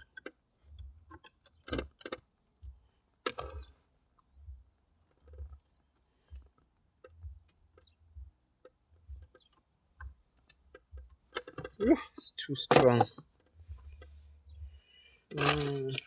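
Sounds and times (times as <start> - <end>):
small clicks and knocks: 0.0 - 2.3
dull low thumps: 7.2 - 7.5, 8.1 - 8.4, 13.6 - 14.8.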